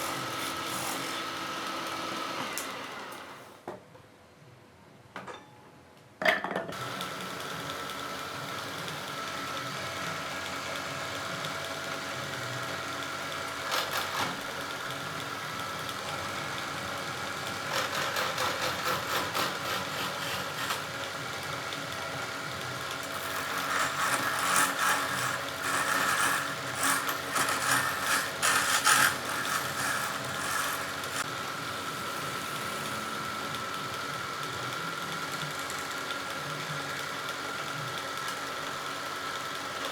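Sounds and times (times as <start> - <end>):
tool scraping spinning wood: 0.0 - 1.8, 13.6 - 14.6, 17.5 - 21.0, 23.0 - 31.3
lathe motor whining: 0.0 - 3.6, 12.8 - 36.0.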